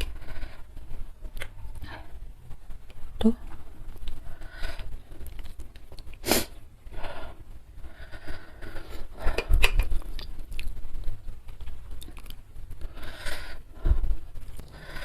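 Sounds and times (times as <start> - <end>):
chewing with crunches: 11.5 - 12.5.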